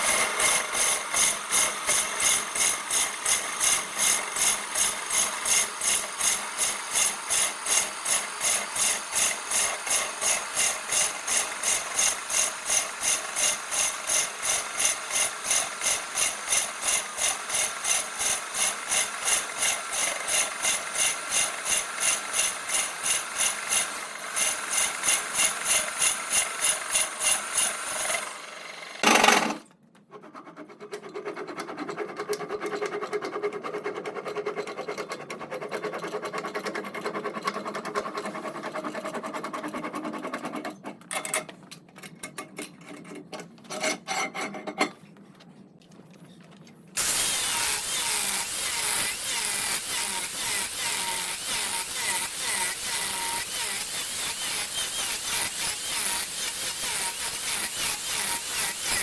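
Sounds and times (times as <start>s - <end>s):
power tools cutting wood: 0.0s - 29.7s, 47.0s - 59.0s.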